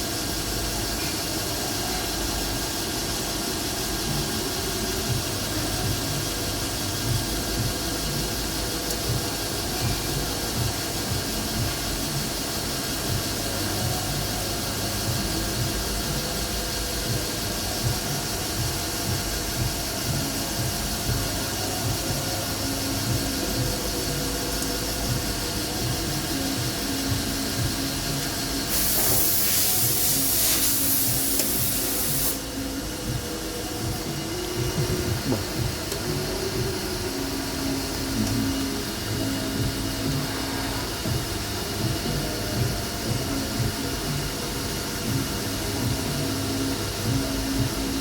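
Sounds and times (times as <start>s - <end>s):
machine tool humming: 2.4s - 48.0s
loud spraying hiss: 28.3s - 32.6s.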